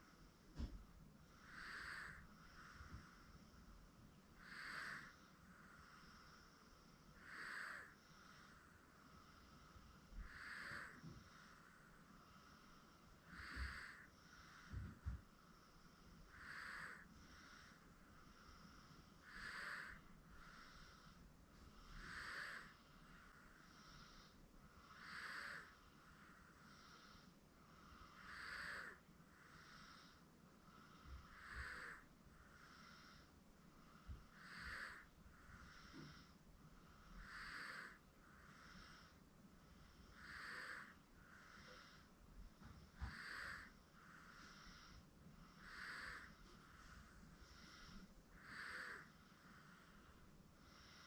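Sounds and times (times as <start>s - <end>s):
baby snoring breathing: 1.4s - 3.3s, 4.4s - 5.2s, 9.2s - 11.6s, 12.4s - 15.0s, 15.6s - 25.9s, 30.8s - 36.4s, 37.0s - 39.2s, 39.8s - 42.1s, 42.8s - 51.0s.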